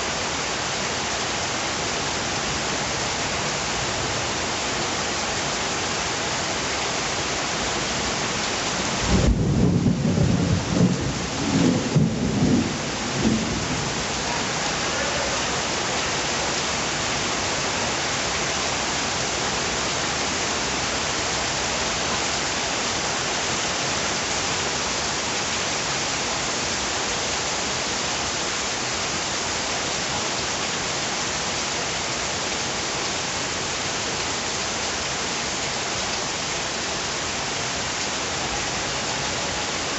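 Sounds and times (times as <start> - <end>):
steady rain falling: 0.0 - 39.9
deep rumble of thunder: 9.0 - 14.0.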